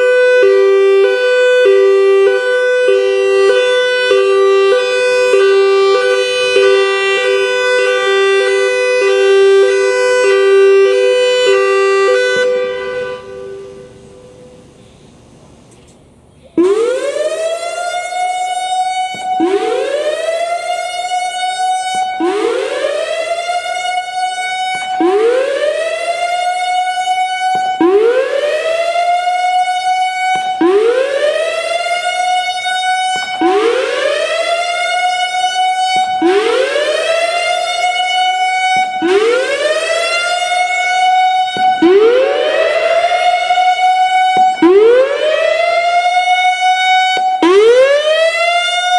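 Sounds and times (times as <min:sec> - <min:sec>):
electronic siren rising sweep: 0:07.9 - 0:15.0, 0:27.9 - 0:29.7, 0:39.2 - 0:48.9.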